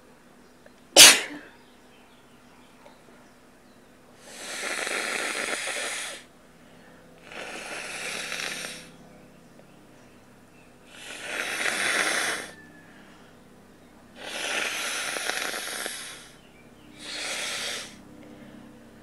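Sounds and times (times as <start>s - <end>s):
person blowing their nose: 1.0s - 1.4s, 14.2s - 16.2s
person sneezing: 1.0s - 1.5s.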